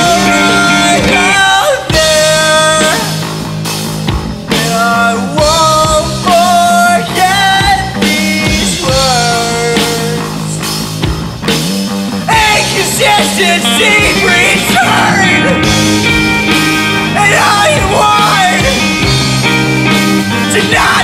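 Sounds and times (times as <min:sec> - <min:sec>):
person singing: 0:00.0 - 0:03.2, 0:04.5 - 0:10.6, 0:12.3 - 0:15.8, 0:17.0 - 0:19.2, 0:20.3 - 0:21.0
rock band playing: 0:00.0 - 0:21.0.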